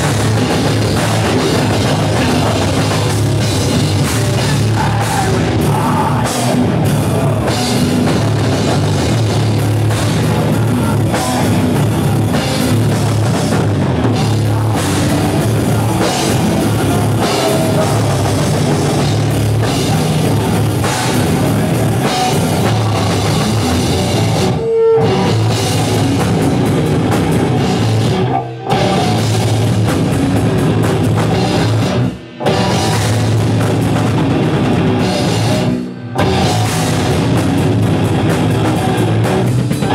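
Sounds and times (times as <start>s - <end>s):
heavy metal band playing: 0.0s - 39.9s.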